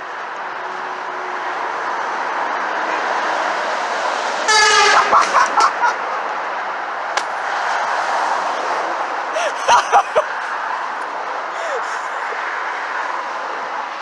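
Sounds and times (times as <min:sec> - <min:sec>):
road traffic noise: 0:00.0 - 0:14.0
truck horn toots: 0:04.5 - 0:05.2.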